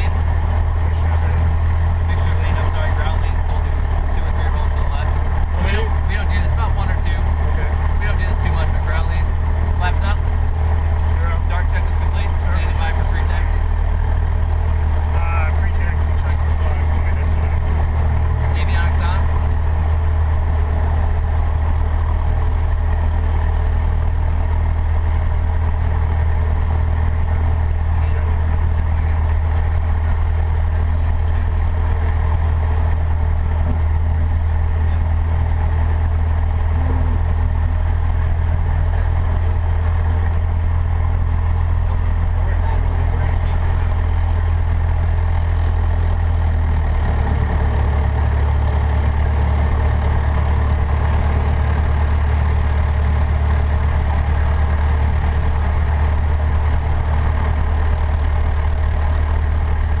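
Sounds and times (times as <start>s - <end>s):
airplane engine idling: 0.0s - 60.0s.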